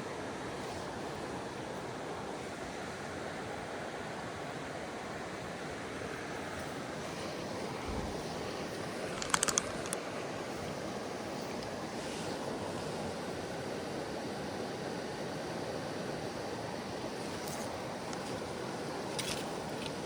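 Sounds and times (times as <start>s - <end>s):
creek water running: 0.0s - 20.0s
sharp clicks: 9.2s - 10.0s.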